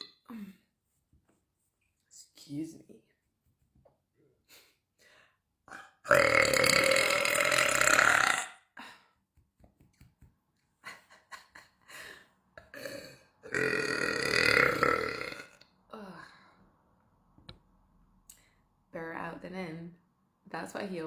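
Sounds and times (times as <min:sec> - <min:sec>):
woman burping loudly: 0:05.7 - 0:08.7, 0:12.6 - 0:15.6.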